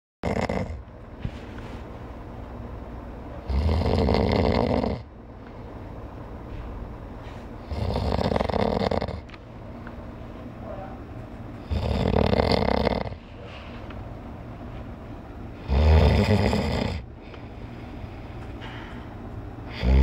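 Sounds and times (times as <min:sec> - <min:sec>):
man snoring loudly: 0:00.2 - 0:00.8, 0:03.4 - 0:05.1, 0:07.7 - 0:09.2, 0:11.6 - 0:13.2, 0:15.6 - 0:17.0, 0:19.7 - 0:20.0
quiet breathing: 0:17.0 - 0:19.9.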